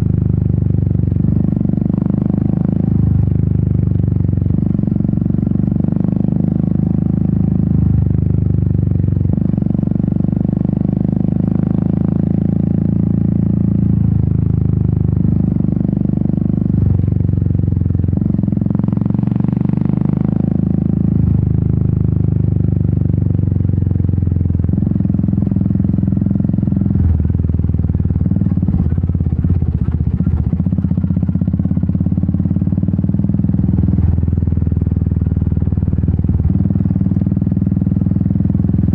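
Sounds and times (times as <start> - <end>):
motorcycle engine and exhaust: 0.0 - 38.9
clatter over rough dirt road: 26.9 - 34.3.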